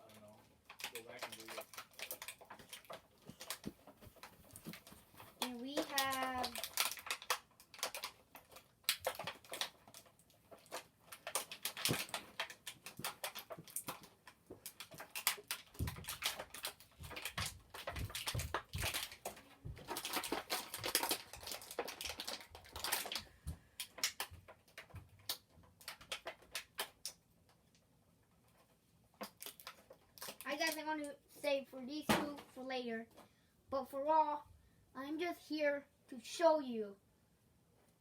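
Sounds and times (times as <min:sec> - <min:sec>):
plastic packaging crinkling: 0:00.6 - 0:27.1, 0:29.2 - 0:30.8.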